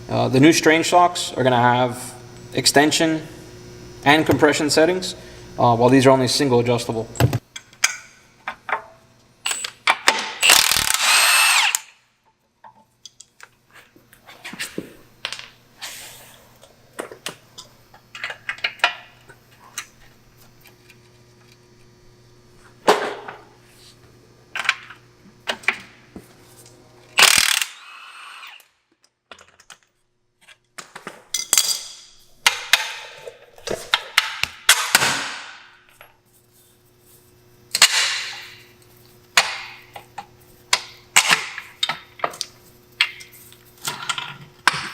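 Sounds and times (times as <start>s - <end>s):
power tool bursts: 9.4s - 12.0s, 27.2s - 28.7s
ratchet clicking: 10.4s - 11.9s, 27.2s - 28.7s.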